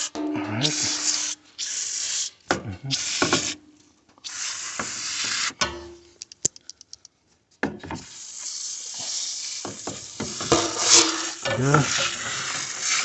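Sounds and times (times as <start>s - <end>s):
rattling clicks of shaken can: 6.2s - 7.1s.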